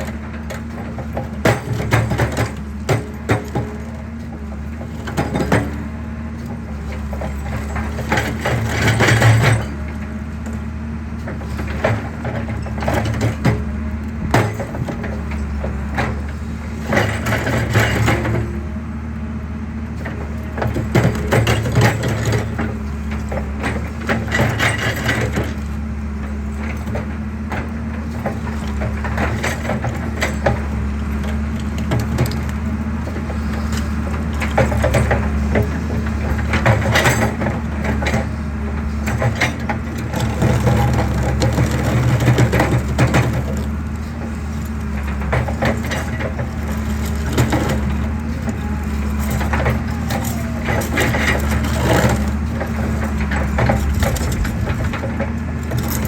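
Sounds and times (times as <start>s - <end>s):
diesel engine running: 0.0s - 56.0s
concrete cracking and crunching: 39.2s - 56.0s.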